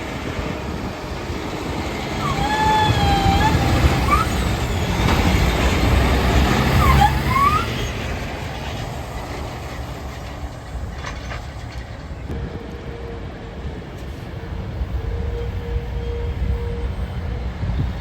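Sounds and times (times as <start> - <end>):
heavy truck passing: 0.0 - 12.4
traffic noise: 0.0 - 18.0.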